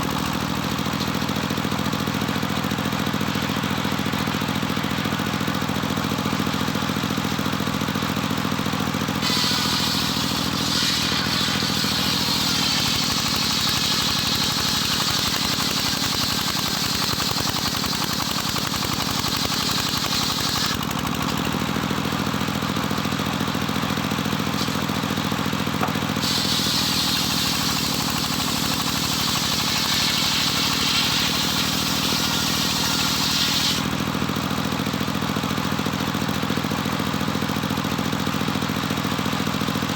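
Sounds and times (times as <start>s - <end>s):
sawmill engine running: 0.0s - 39.9s
saw blade ripping through log: 9.1s - 20.8s, 24.5s - 25.0s, 26.1s - 34.1s.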